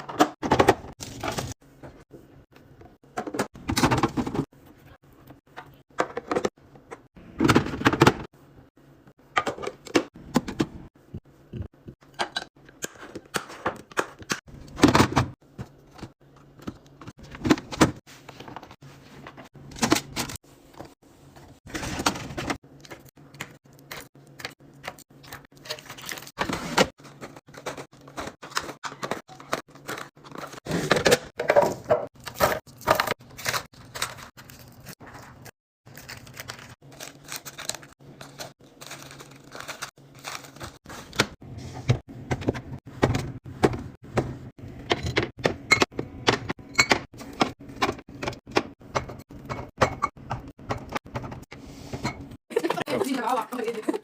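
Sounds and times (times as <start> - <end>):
plastic and glass containers clattering: 25.3 - 35.4.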